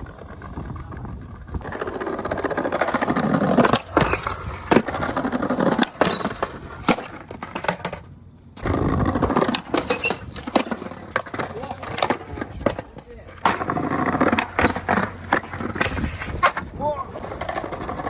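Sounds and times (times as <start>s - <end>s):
skateboard clacking on ground: 0.0s - 18.0s
skateboard wheels rolling: 0.0s - 18.0s.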